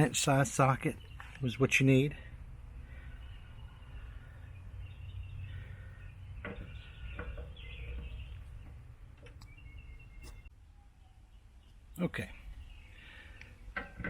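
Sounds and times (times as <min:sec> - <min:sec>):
low outdoor rumble: 0:00.0 - 0:10.5
birds chirping faintly: 0:00.0 - 0:14.0.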